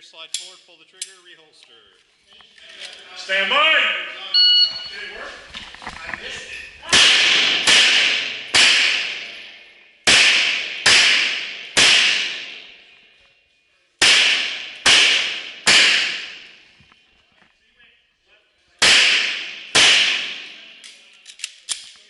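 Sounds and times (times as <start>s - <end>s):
pistol shots with echo: 6.9s - 12.9s, 14.0s - 16.6s, 18.8s - 20.7s.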